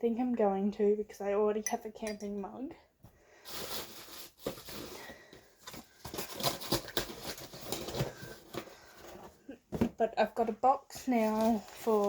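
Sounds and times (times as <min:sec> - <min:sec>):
rustling: 0:03.4 - 0:10.0, 0:10.9 - 0:12.0.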